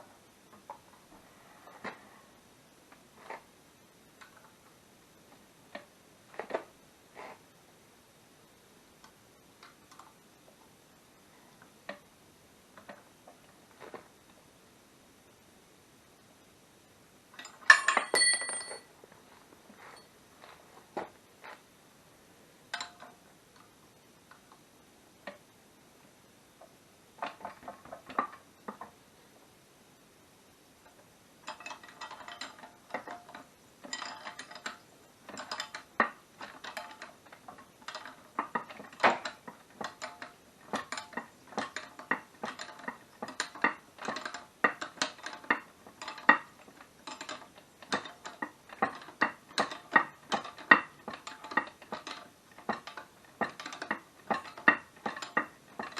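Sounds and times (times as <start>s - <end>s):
metallic clinks of tools: 17.6s - 18.9s.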